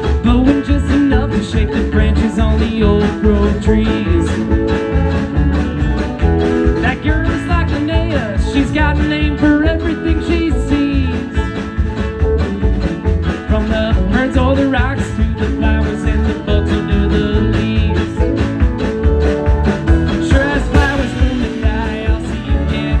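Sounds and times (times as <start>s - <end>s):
guitar: 0.0s - 23.0s
steady bass beat: 0.0s - 23.0s
string band playing country-rock: 0.0s - 23.0s
lead instrument bending sliding notes: 19.4s - 23.0s.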